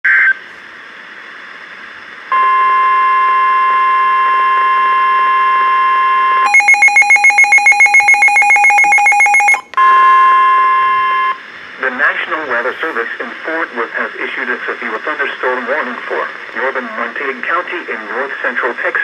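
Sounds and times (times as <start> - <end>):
rapidly pulsing alarm beep: 6.1 - 11.4
steady alert tone: 6.5 - 9.7
faint radio hiss: 11.4 - 19.0.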